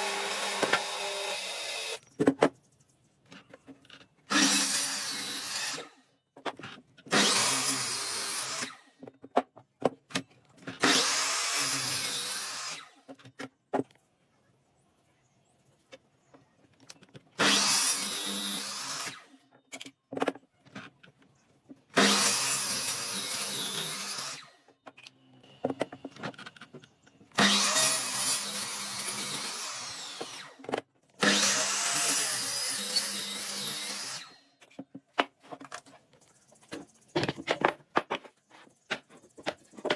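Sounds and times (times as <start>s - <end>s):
power tool working wood: 0.0s - 2.0s, 7.1s - 8.8s, 10.8s - 12.8s, 17.4s - 19.3s, 22.0s - 24.5s, 27.4s - 30.6s, 31.2s - 34.4s.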